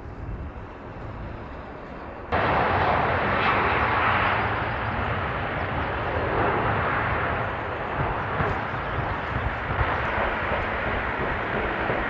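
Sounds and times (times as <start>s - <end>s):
aircraft engine noise: 0.0s - 12.0s.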